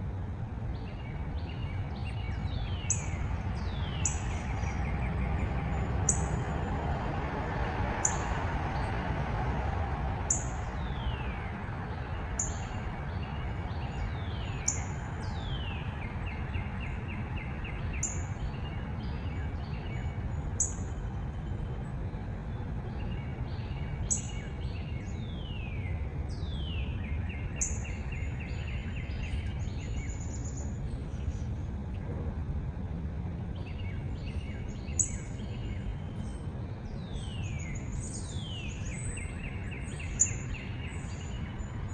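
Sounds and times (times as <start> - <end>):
low outdoor rumble: 0.0 - 41.9
songbird singing: 0.0 - 41.9.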